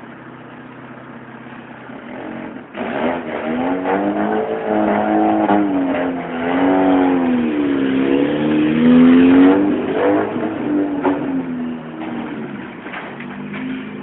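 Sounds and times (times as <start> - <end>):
car engine revving: 0.0 - 14.0
sharp exhaust pops: 8.5 - 14.0.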